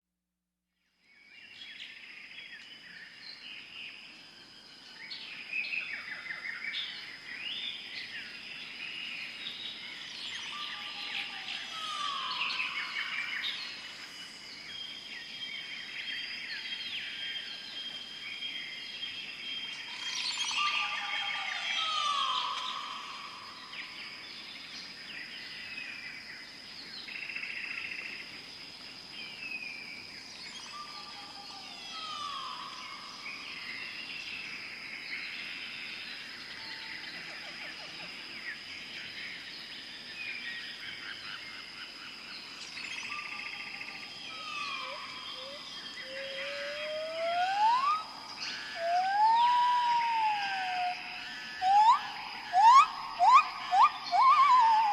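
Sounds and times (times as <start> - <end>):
birds chirping and calling: 19.7 - 23.4, 42.7 - 54.9
rising whistle: 44.8 - 51.0, 51.6 - 54.9.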